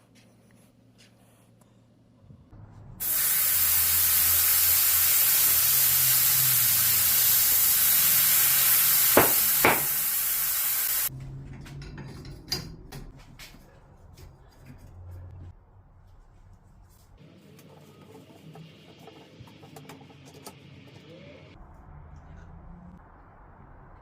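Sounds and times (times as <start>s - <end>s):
compressed air hissing: 3.0s - 11.1s.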